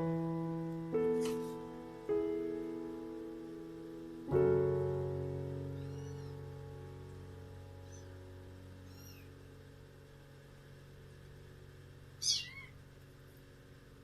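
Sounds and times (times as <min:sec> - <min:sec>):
piano music: 0:00.0 - 0:11.3
cat meowing: 0:05.8 - 0:06.4, 0:08.9 - 0:09.3, 0:12.2 - 0:12.8.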